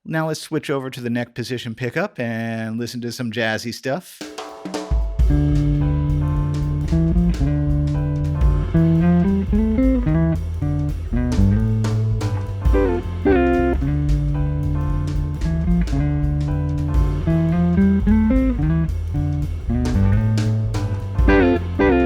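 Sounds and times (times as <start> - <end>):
backing track with bass and drums: 4.4 - 22.0
electric guitar playing jazzy chords: 5.2 - 22.0.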